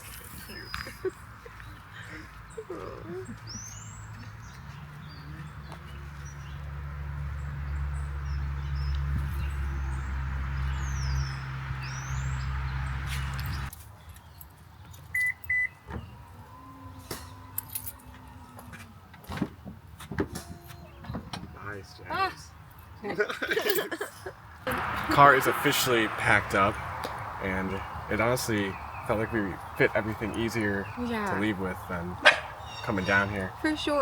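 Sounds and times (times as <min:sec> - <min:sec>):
car engine idling: 0:24.7 - 0:32.1
bird chirps: 0:26.8 - 0:33.9.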